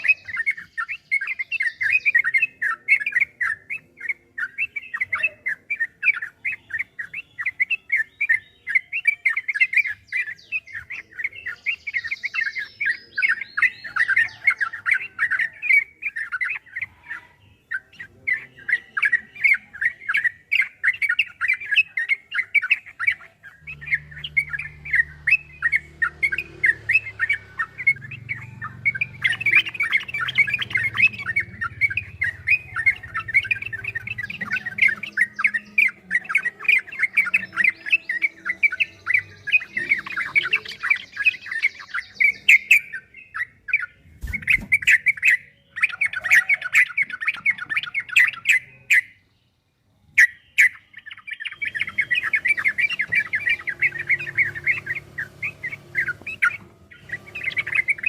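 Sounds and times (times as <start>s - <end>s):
bulbul chattering song: 0.0s - 58.0s
low hum: 23.4s - 36.0s.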